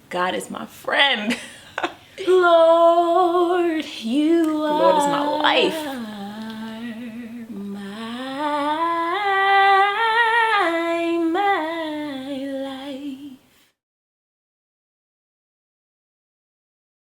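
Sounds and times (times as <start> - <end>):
person singing unaccompanied: 2.2 - 13.4.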